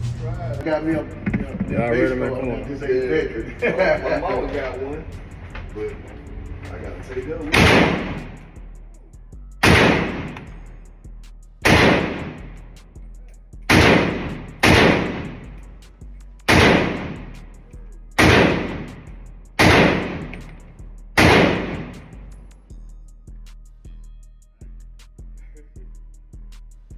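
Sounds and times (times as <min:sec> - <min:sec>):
gunshots: 0:07.5 - 0:08.4, 0:09.6 - 0:10.5, 0:11.6 - 0:12.5, 0:13.7 - 0:15.5, 0:16.5 - 0:17.4, 0:18.2 - 0:20.6, 0:21.2 - 0:22.2.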